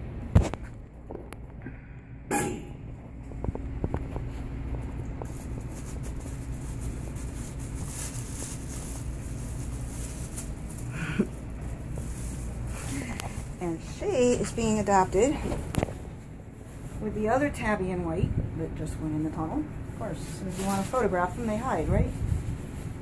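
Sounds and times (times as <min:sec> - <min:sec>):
low hum of store background: 0:00.0 - 0:23.0.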